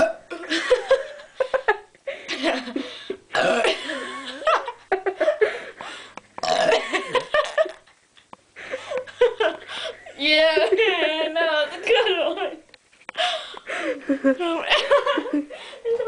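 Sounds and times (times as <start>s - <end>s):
person burping: 0.0s - 0.4s, 3.3s - 4.0s, 6.4s - 7.6s.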